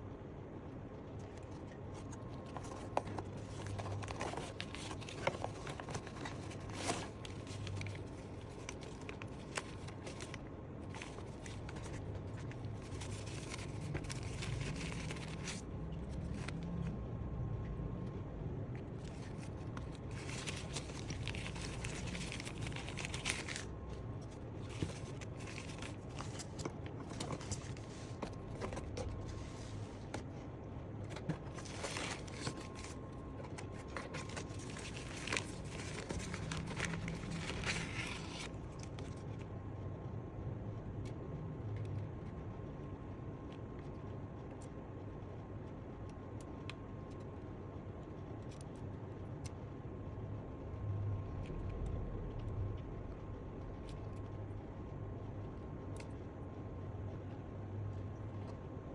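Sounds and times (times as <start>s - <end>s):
packaging crinkling and tearing: 1.2s - 16.9s, 19.0s - 30.3s, 31.1s - 39.2s.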